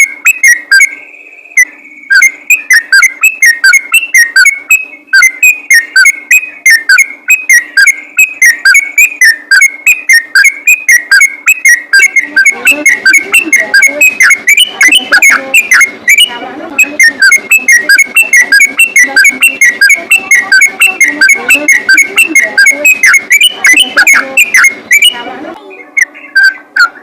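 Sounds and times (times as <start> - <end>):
bird singing whistled notes: 0.0 - 16.4
bird chattering: 2.1 - 27.0.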